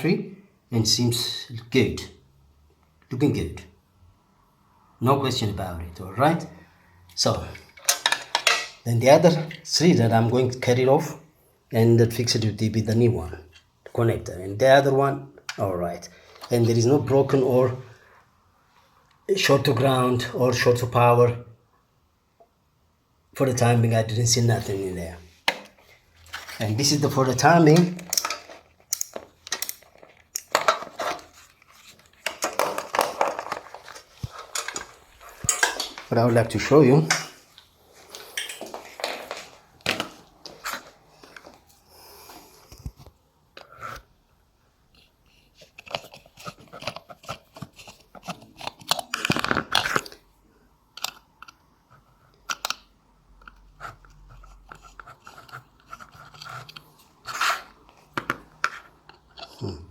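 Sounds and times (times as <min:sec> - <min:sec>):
tools and plastic parts handled: 0:07.0 - 0:09.7, 0:15.4 - 0:16.8, 0:25.4 - 0:41.8, 0:44.8 - 0:59.9
small metal tools clinking: 0:34.4 - 0:36.1, 0:38.3 - 0:39.4.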